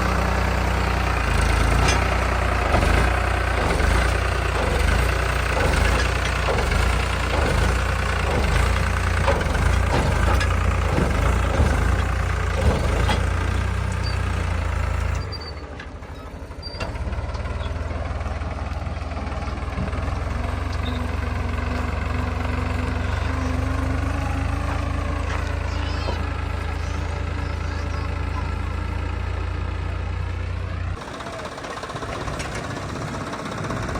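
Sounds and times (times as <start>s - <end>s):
diesel engine running: 0.0s - 33.9s
knocks and clatter: 1.3s - 15.9s.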